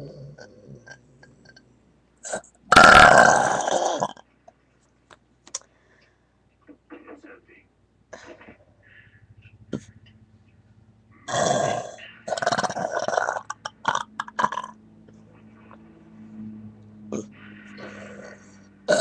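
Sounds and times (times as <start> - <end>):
person burping loudly: 2.2 - 4.2, 11.3 - 14.8, 17.1 - 19.0.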